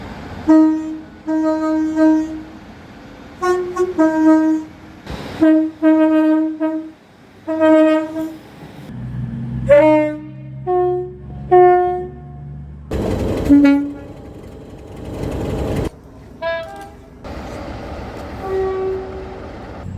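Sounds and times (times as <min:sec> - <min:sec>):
low engine hum: 0:00.0 - 0:19.9
train horn blasts: 0:00.4 - 0:02.6, 0:03.4 - 0:08.5, 0:09.6 - 0:12.7, 0:13.4 - 0:14.2, 0:16.4 - 0:17.4, 0:18.4 - 0:19.4.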